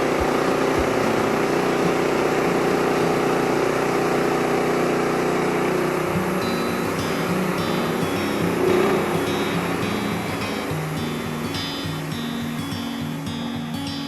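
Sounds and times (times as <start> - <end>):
band sawmill cutting log: 0.0 - 4.1.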